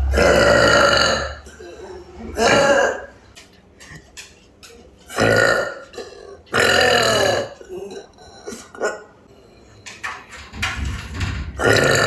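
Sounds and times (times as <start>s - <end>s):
person burping loudly: 0.0s - 1.8s, 2.4s - 3.1s, 5.1s - 8.0s, 11.6s - 12.0s.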